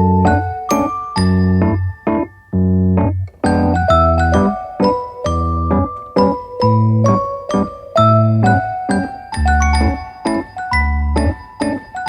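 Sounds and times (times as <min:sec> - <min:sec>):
bouncy keyboard tune: 0:00.0 - 0:12.0
bass line: 0:01.2 - 0:04.6, 0:05.3 - 0:05.9, 0:08.0 - 0:08.7.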